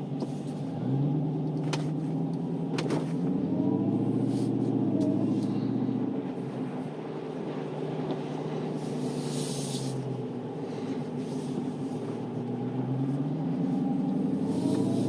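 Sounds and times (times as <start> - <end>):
car engine running: 0.0 - 15.0
tyres on wet road: 0.0 - 15.0
brief hiss: 9.0 - 10.0.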